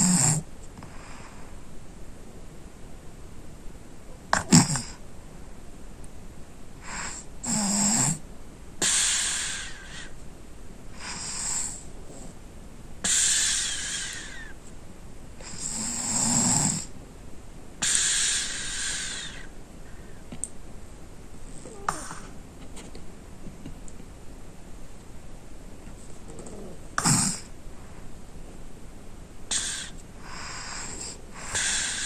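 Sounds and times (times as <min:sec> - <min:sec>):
child snoring: 0:00.0 - 0:01.4, 0:04.2 - 0:05.0, 0:06.8 - 0:08.2, 0:08.8 - 0:10.1, 0:11.0 - 0:12.4, 0:13.0 - 0:14.6, 0:15.4 - 0:16.9, 0:17.8 - 0:19.5, 0:21.5 - 0:22.4, 0:26.3 - 0:27.5, 0:29.5 - 0:32.0
airy breaths: 0:00.8 - 0:01.6, 0:08.8 - 0:10.2, 0:10.9 - 0:12.4, 0:13.0 - 0:14.6, 0:17.8 - 0:20.3, 0:29.5 - 0:32.0.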